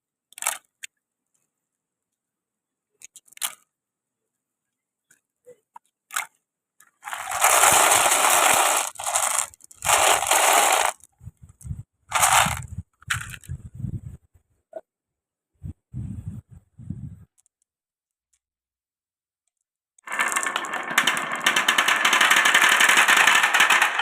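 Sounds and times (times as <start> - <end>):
marbles clacking: 7.0 - 11.0, 12.1 - 13.4, 20.0 - 24.0
marbles rolling on wooden track: 7.0 - 11.1, 12.1 - 13.4, 20.0 - 24.0.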